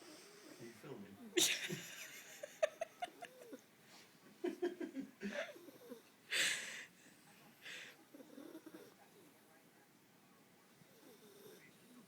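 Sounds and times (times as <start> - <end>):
dog wheezing and snoring: 5.3 - 6.1, 7.7 - 9.3, 10.9 - 12.0.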